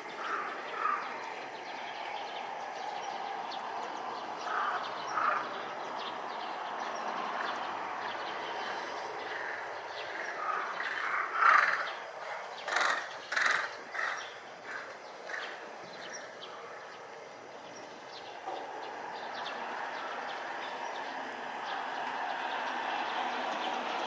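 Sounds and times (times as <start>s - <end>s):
outdoor background noise: 0.0s - 24.0s
bird calling in harsh bursts: 12.6s - 15.4s.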